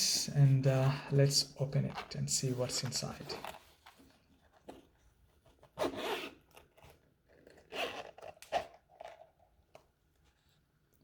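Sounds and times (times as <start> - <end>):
box packaging rustling: 1.6 - 5.8, 6.4 - 10.4.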